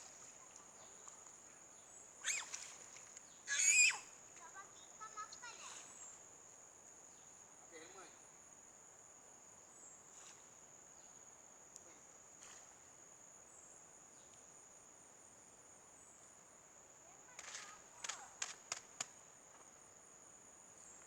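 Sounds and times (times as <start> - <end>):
insects droning: 0.0 - 21.0.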